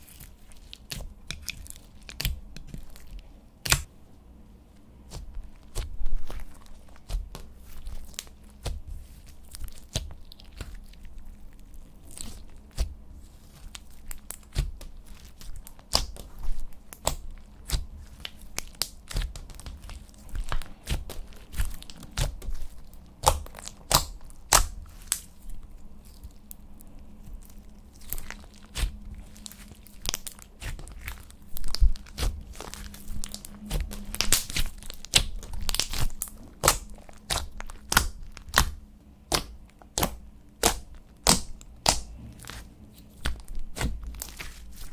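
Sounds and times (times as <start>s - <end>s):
slime squishing: 0.0s - 44.9s
slime popping and clicking: 34.1s - 42.1s.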